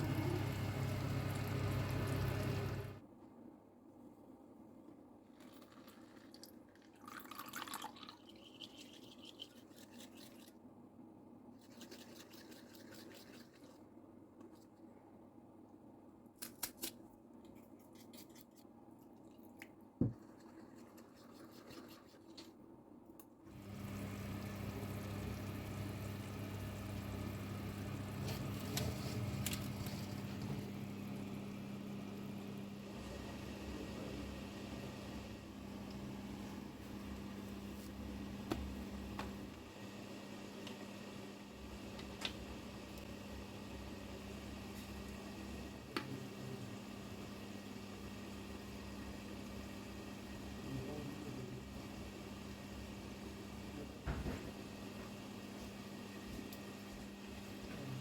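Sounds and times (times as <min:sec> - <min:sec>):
electric appliance humming: 0:00.0 - 0:03.0, 0:23.4 - 0:58.0.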